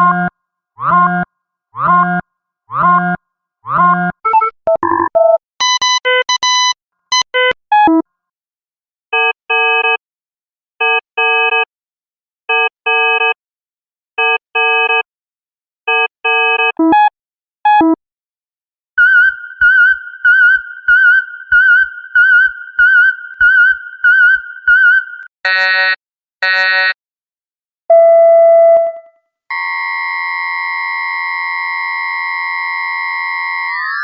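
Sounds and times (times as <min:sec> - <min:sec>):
electronic bleeps and tones: 0:03.8 - 0:08.0, 0:17.7 - 0:18.0
two-beep electronic signal: 0:04.3 - 0:08.0, 0:17.7 - 0:18.0.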